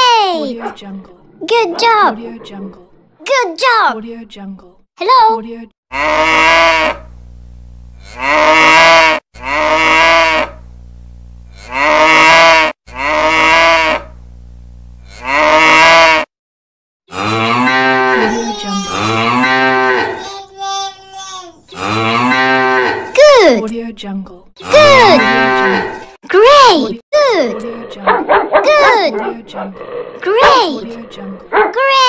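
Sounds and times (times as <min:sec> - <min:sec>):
cow mooing: 0:05.9 - 0:07.0, 0:08.0 - 0:10.6, 0:11.5 - 0:14.1, 0:15.0 - 0:16.2, 0:17.1 - 0:20.3, 0:21.7 - 0:23.2, 0:24.6 - 0:26.1, 0:29.7 - 0:31.5.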